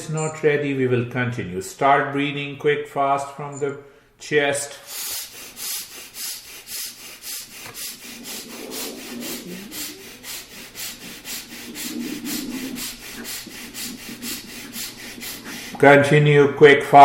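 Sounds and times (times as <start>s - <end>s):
rapid forceful breathing: 3.9s - 15.9s.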